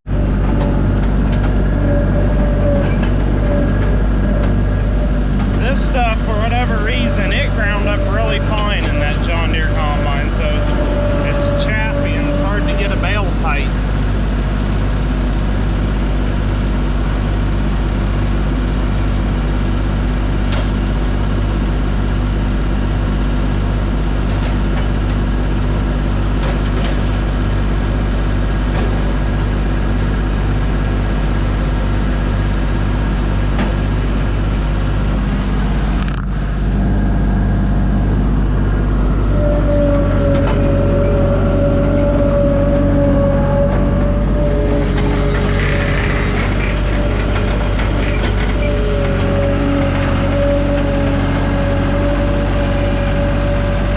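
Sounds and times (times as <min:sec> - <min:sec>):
diesel engine running: 0:00.0 - 0:53.9
steady high tone: 0:01.9 - 0:13.8.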